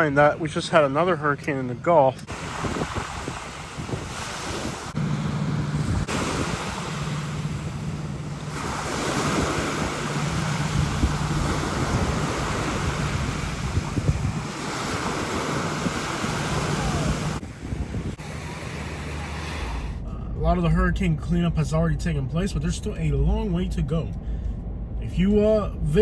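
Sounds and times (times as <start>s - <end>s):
wind buffeting microphone: 2.2s - 26.0s
surf washing onto beach: 2.3s - 21.6s
low hum: 4.8s - 26.0s.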